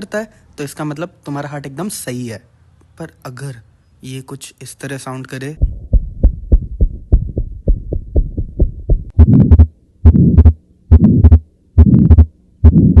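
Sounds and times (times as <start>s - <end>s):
fast uneven heartbeats: 5.6s - 13.0s
heart murmurs: 5.6s - 13.0s.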